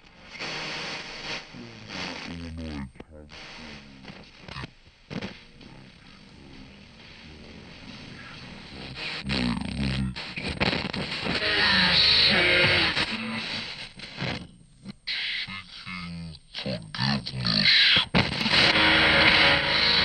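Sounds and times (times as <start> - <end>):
music soundtrack: 18.6 - 20.0.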